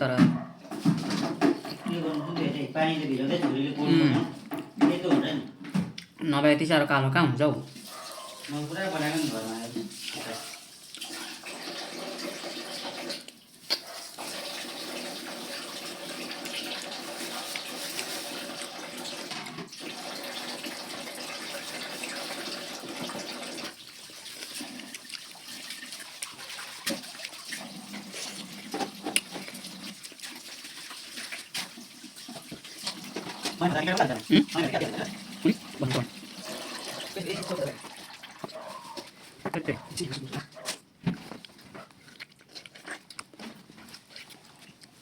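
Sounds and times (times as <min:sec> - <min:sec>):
water running from tap: 0:07.6 - 0:39.0.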